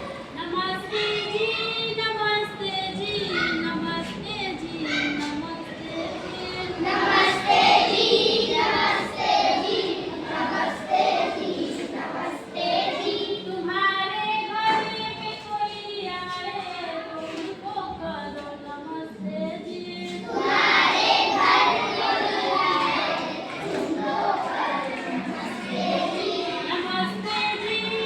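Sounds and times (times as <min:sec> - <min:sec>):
children singing together: 0:02.9 - 0:14.9, 0:19.6 - 0:28.0.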